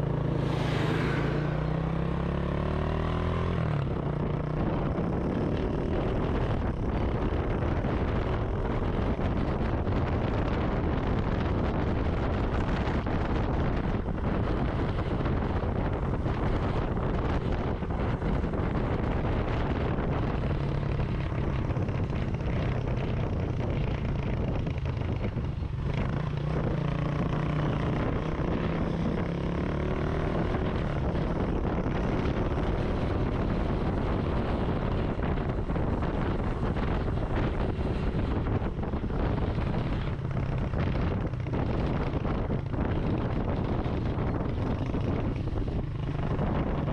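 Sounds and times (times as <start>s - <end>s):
motorcycle engine running: 0.0s - 46.9s
wind buffeting microphone: 0.0s - 46.9s.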